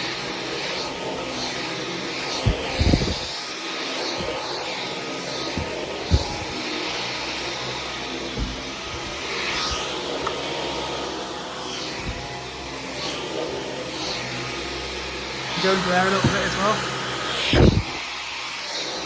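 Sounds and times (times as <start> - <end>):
vacuum cleaner motor whine: 0.0 - 19.0
light knocks: 2.4 - 3.3, 5.6 - 6.6, 8.4 - 9.8, 12.0 - 12.4.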